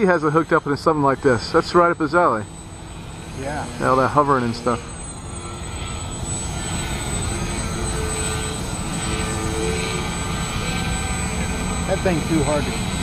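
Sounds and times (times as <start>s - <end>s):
model airplane motor whine: 0.0s - 13.0s.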